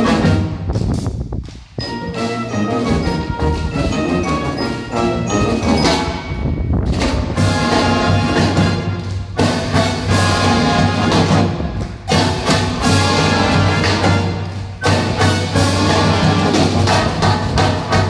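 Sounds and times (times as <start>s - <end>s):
brass melody: 0.0s - 0.8s, 1.8s - 18.0s
marching band playing: 0.0s - 1.2s, 1.8s - 18.0s
wind buffeting microphone: 6.1s - 7.4s.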